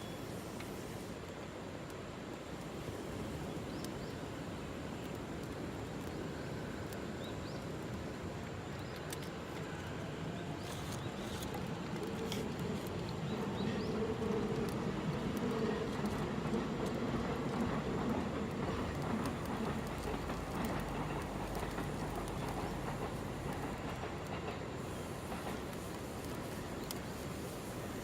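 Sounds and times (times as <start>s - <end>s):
train humming: 0.0s - 28.0s.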